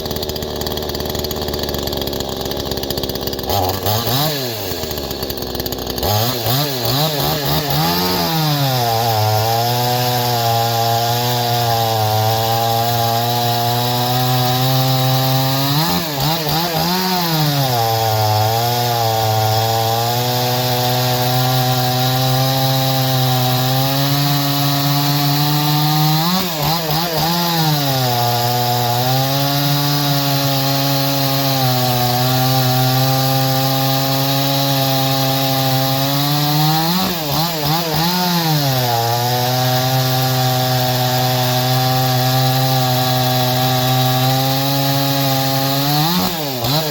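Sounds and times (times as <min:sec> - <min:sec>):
chainsaw cutting wood: 0:00.0 - 0:46.9.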